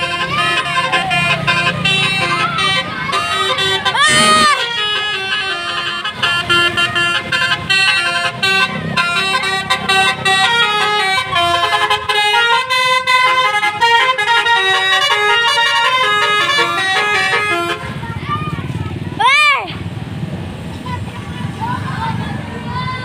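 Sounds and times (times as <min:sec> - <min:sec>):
multi-tone bus horn tune: 0:00.0 - 0:18.0.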